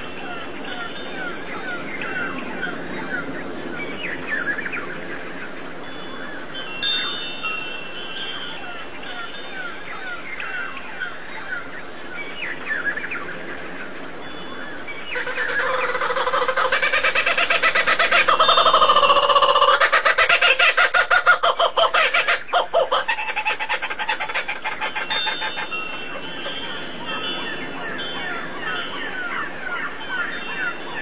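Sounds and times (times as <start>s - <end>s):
bird chirps and calls: 14.9s - 31.0s.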